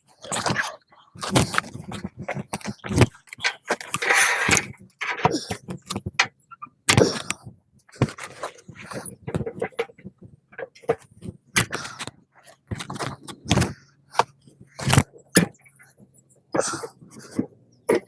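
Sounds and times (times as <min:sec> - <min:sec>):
objects knocking and clattering: 0:00.3 - 0:07.3, 0:08.0 - 0:12.0.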